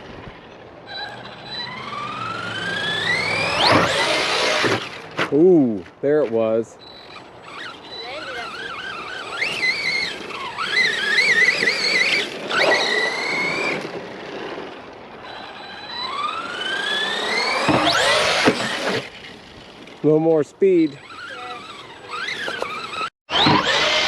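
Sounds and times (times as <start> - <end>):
electric motor whining: 0.9 - 5.0, 15.3 - 19.1, 21.0 - 24.0.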